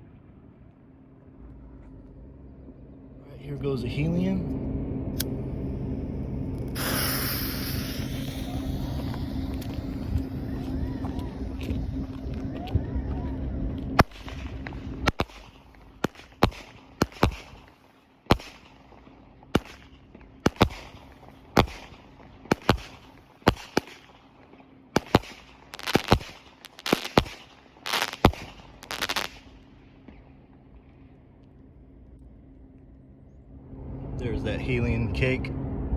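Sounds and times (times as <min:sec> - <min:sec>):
firework cake firing bangs: 0:06.8 - 0:09.9, 0:14.0 - 0:24.3, 0:25.0 - 0:29.6.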